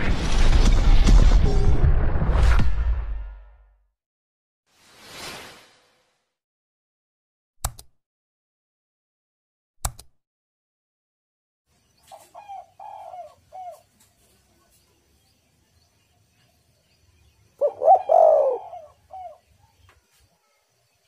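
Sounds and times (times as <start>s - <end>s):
sharp clicks: 7.6s - 7.9s, 9.8s - 10.2s
dove cooing: 12.1s - 13.9s, 17.6s - 19.5s.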